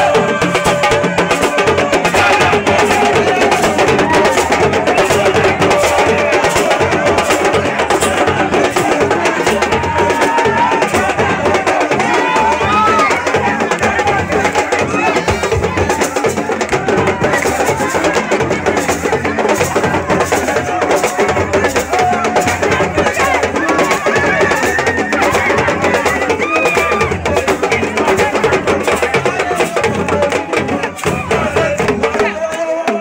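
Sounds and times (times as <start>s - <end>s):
drums in fast rhythm: 0.0s - 33.0s
voices singing or calling: 0.0s - 33.0s.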